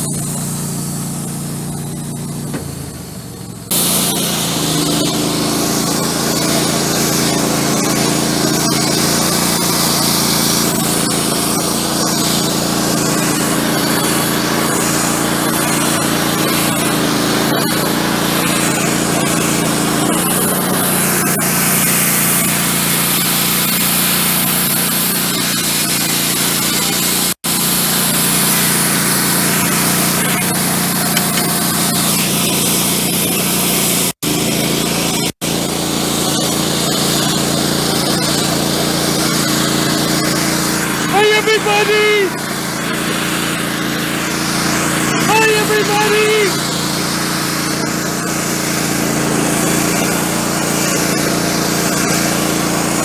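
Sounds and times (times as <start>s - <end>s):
sawmill engine humming: 0.0s - 53.0s
band saw blade cutting log: 3.7s - 36.8s.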